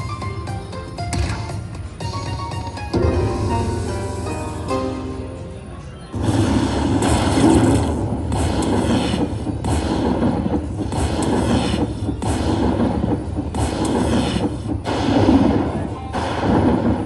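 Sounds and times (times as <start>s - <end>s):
slot machine booming rumble: 2.9s - 5.3s, 6.1s - 17.0s.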